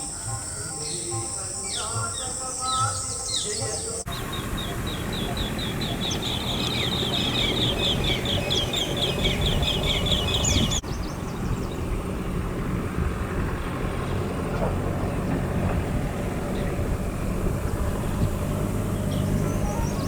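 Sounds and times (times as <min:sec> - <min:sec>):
bird calling high repeated notes: 0:00.0 - 0:10.9
low background rumble: 0:04.1 - 0:20.0.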